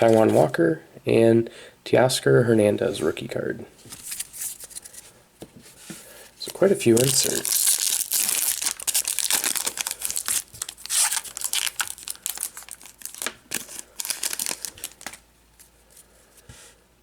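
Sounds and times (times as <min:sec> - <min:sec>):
plastic wrapper tearing and crinkling: 0:06.5 - 0:15.2.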